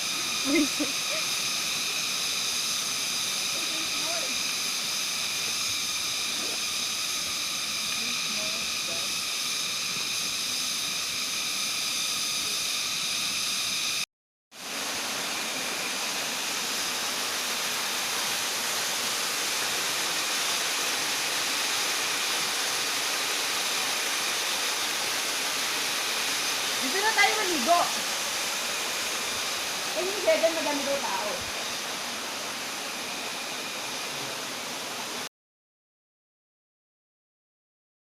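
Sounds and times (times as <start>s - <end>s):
waterfall rushing: 14.6s - 35.3s.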